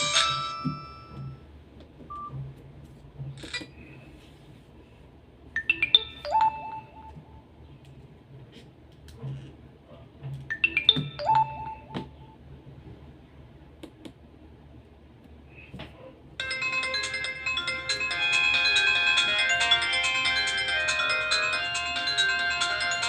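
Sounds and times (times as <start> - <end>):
phone ringtone melody: 0.0 - 1.4, 5.6 - 7.2, 10.5 - 12.0, 16.4 - 23.0.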